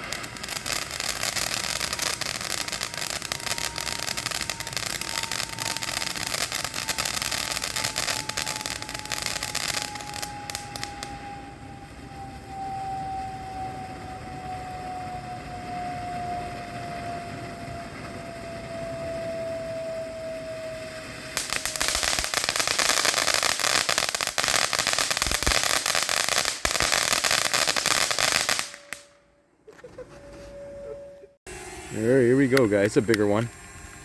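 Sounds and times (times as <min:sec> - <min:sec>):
fireworks crackling: 0:00.0 - 0:11.4, 0:20.8 - 0:29.2, 0:31.9 - 0:34.0
firework whistle falling in pitch: 0:00.0 - 0:32.6.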